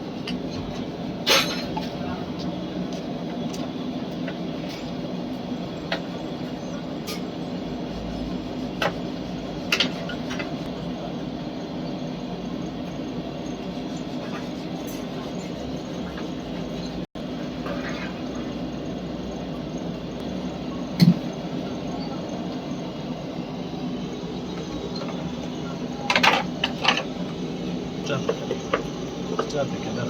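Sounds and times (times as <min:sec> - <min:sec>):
machine humming: 0:01.9 - 0:30.0.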